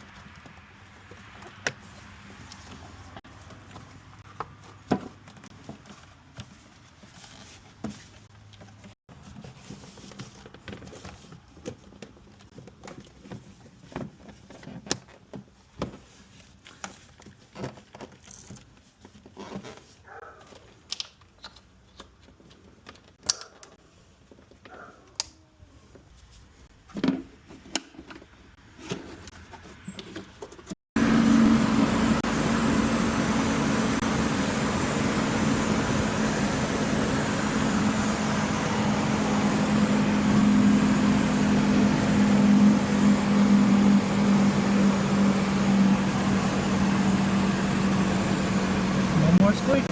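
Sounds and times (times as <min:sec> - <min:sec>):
engine running with loud hum: 0:31.0 - 0:49.9
fan noise: 0:31.0 - 0:49.9.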